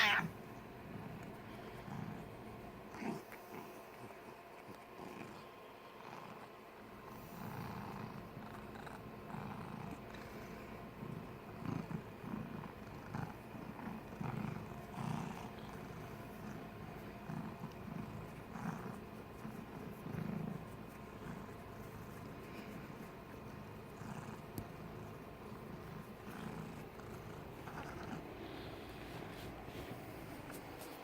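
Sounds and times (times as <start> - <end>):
cat snoring: 7.3 - 16.6, 17.2 - 20.6, 25.7 - 29.9.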